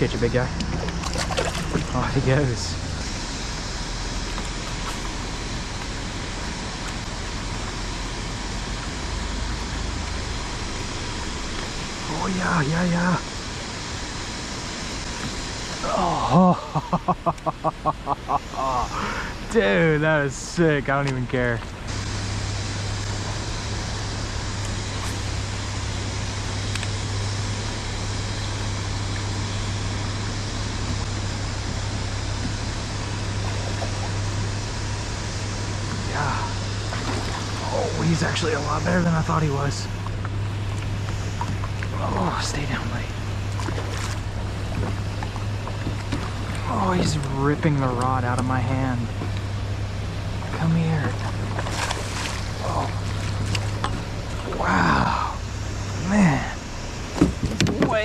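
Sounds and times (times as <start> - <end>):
low steady hum: 0.0 - 58.0
river current rushing: 21.7 - 58.0
river water rushing: 49.3 - 56.1.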